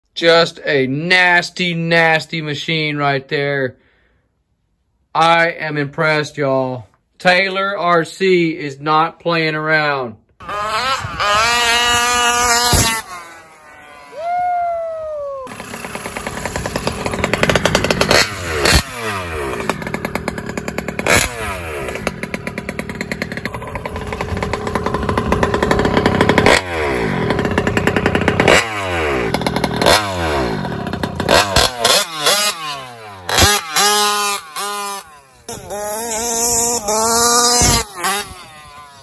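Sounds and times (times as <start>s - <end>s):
model engine revving: 10.4s - 14.4s, 15.1s - 39.0s.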